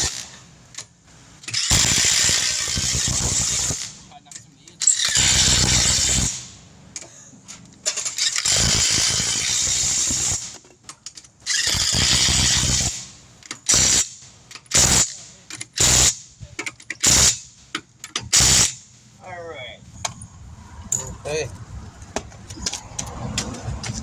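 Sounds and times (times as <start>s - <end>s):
impact wrench running: 1.5s - 4.1s, 4.9s - 6.5s, 7.9s - 10.6s, 11.5s - 13.1s.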